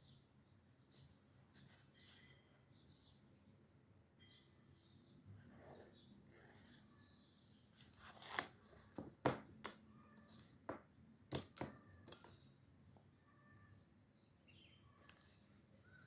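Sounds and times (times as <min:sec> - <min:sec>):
paper rustle: 0:07.8 - 0:09.0
stationery clicking on desk: 0:11.3 - 0:12.4.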